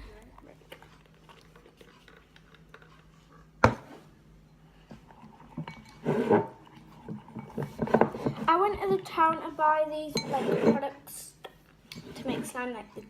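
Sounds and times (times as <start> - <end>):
knocking and mixing noise: 0.0 - 13.0
utensil clinking on mixing bowl: 4.4 - 9.4.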